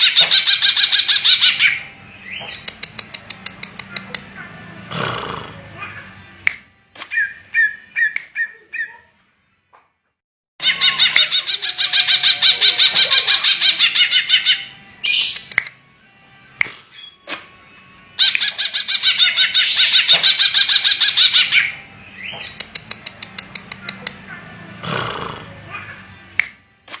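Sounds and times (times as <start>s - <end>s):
bird rapid chattering song: 10.6s - 15.6s.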